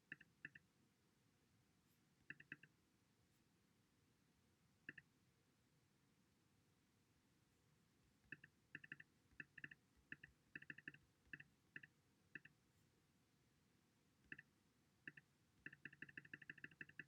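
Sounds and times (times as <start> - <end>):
small sharp clicks: 0.0 - 0.6, 2.3 - 2.7, 4.8 - 5.1, 8.3 - 12.6, 14.3 - 17.0.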